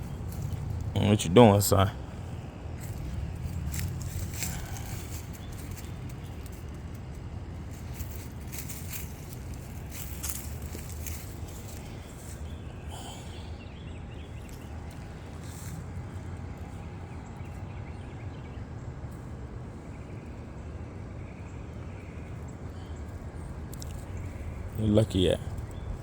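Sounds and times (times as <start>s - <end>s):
soft rustles: 2.8s - 12.6s, 14.4s - 16.0s.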